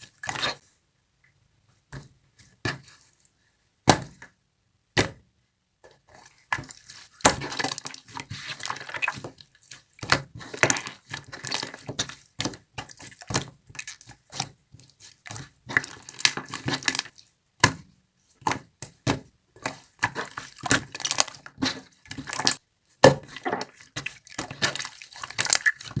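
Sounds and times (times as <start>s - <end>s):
slime squelching: 6.2s - 14.1s, 14.8s - 17.2s, 19.6s - 26.0s.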